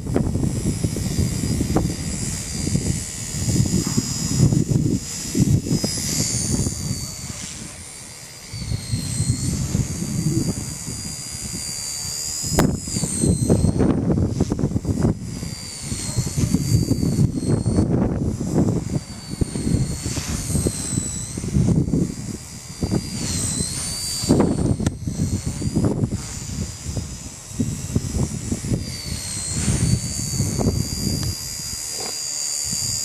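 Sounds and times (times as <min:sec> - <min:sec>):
wind buffeting microphone: 0:00.0 - 0:32.0
rc helicopter motor whining: 0:00.0 - 0:33.0
sharp click: 0:12.5 - 0:13.2.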